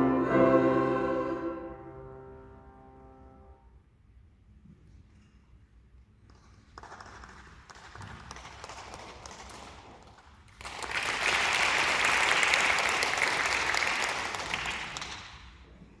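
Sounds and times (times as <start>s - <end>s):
audience applauding: 10.5s - 15.4s.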